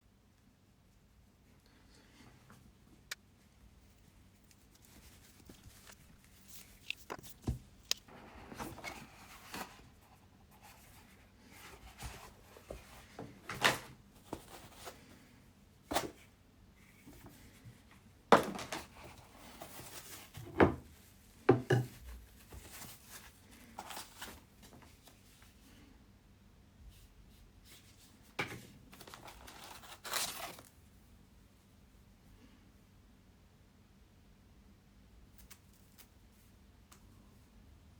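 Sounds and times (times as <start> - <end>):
box knocks and thunks: 18.3 - 18.9
cardboard packaging rustling and tearing: 18.4 - 20.4, 28.9 - 30.8.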